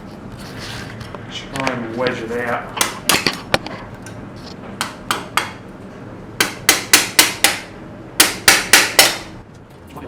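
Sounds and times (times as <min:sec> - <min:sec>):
hammer striking metal tool: 0:06.4 - 0:09.4.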